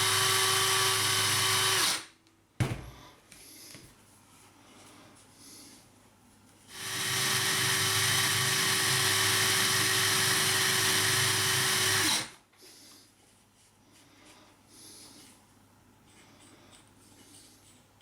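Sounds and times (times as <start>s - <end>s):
drill spinning wire brush: 0.0s - 2.0s, 6.7s - 12.4s.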